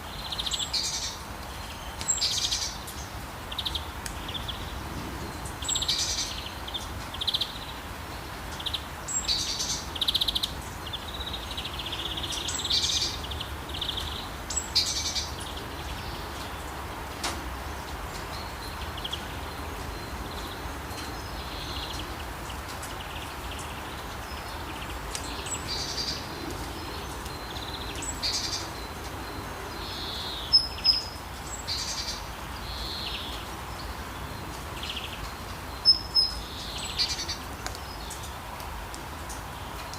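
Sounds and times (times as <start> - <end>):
rain hissing: 0.0 - 39.9
birds chirping and calling: 8.5 - 16.8, 17.7 - 38.4.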